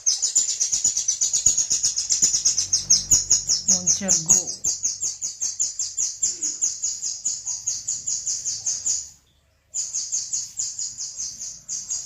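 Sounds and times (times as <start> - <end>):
fast high bird chirps: 0.0 - 9.2.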